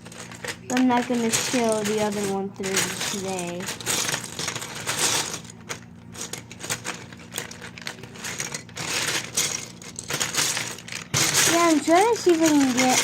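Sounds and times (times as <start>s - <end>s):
plastic toy bricks clicking and rattling: 0.0s - 13.0s.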